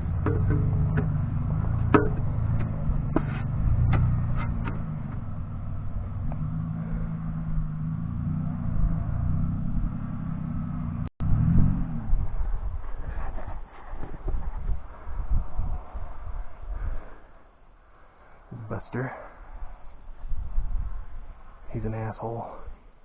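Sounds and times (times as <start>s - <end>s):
sharp rattling knocks: 0.0s - 5.6s
vehicle engine running: 0.0s - 14.5s.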